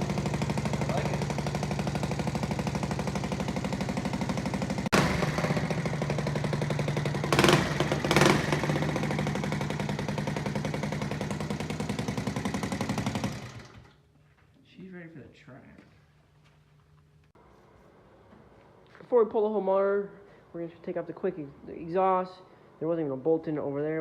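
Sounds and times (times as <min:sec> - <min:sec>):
single-cylinder engine running: 0:00.0 - 0:14.0.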